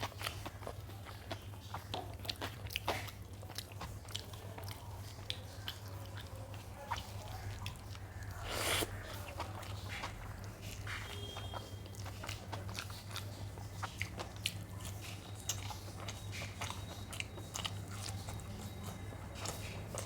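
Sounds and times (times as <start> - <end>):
chewing and eating: 0.0 - 20.0
steady low hum: 4.8 - 20.0.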